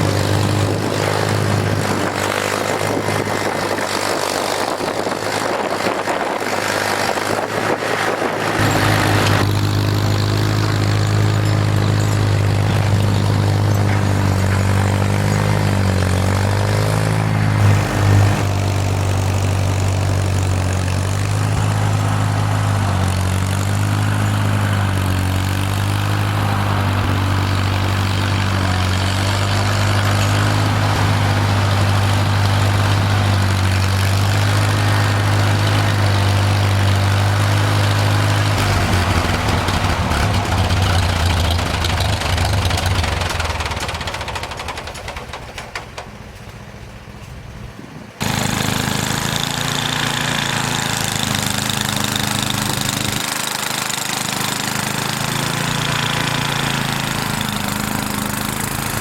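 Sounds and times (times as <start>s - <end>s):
engine running under load: 0.0s - 59.0s
loud knocks: 37.6s - 46.4s.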